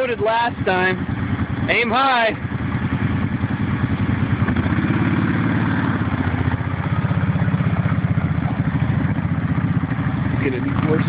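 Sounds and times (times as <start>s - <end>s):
quad bike engine running: 0.0s - 11.0s.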